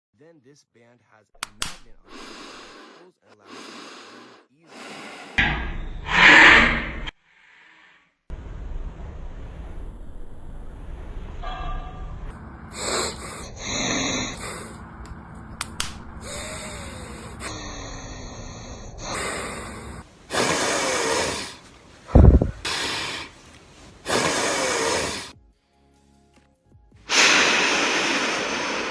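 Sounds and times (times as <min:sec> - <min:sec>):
person breathing through nose: 0:02.0 - 0:05.4, 0:12.7 - 0:14.8, 0:16.1 - 0:25.4, 0:27.1 - 0:28.9
short low thump: 0:22.1 - 0:22.6.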